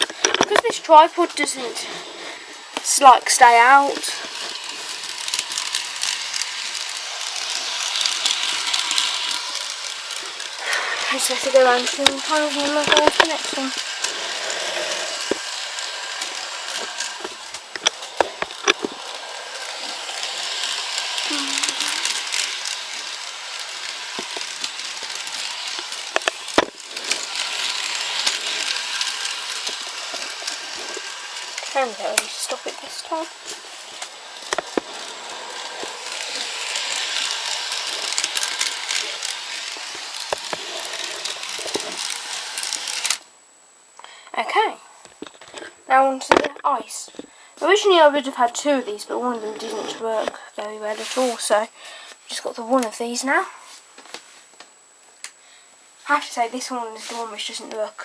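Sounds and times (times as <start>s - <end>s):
wheels clicking and rattling: 0.0s - 1.9s, 2.7s - 43.3s
model train motor hiss: 0.0s - 43.3s, 45.2s - 54.6s, 55.2s - 58.0s.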